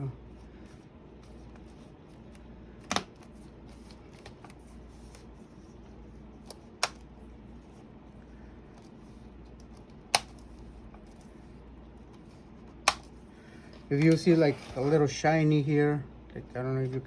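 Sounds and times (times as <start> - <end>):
laptop keyboard plastic clicks: 9.6 - 10.5.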